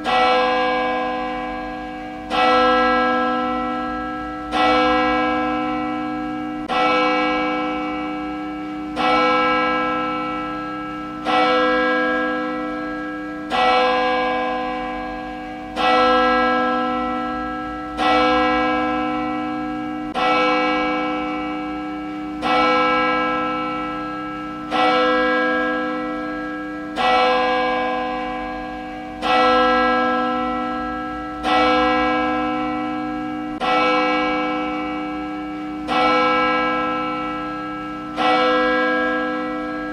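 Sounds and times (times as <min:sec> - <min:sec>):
church bell tolling: 0:00.0 - 0:39.9.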